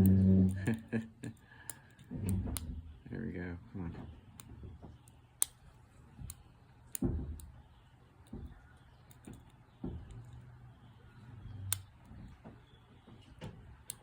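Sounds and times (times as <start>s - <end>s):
lock pick clicking on pins: 0.0s - 2.7s, 8.2s - 10.4s, 11.4s - 12.4s, 13.7s - 14.0s.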